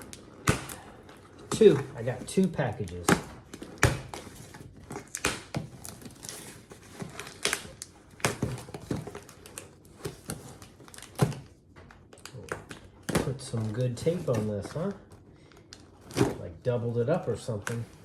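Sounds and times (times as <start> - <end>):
package tape scratching and crinkling: 0.0 - 11.4.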